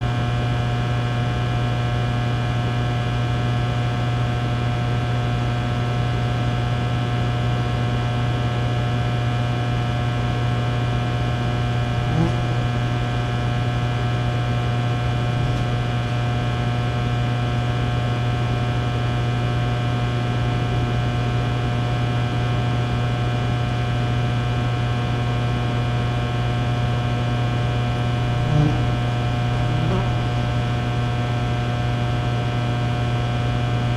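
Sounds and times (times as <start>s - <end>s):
fly buzzing: 11.9s - 13.1s, 15.0s - 16.5s, 27.9s - 31.0s.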